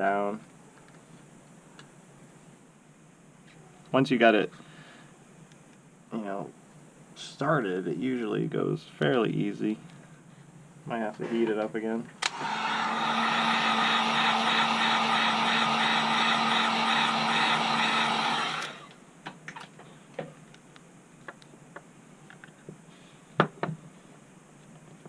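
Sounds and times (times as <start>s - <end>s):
heat gun blowing: 12.2s - 19.0s.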